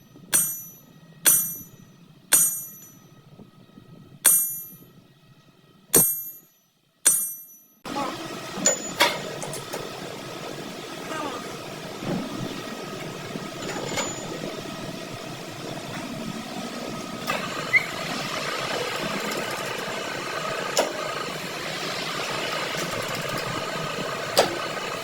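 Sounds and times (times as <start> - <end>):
workshop machine humming: 7.2 - 25.0.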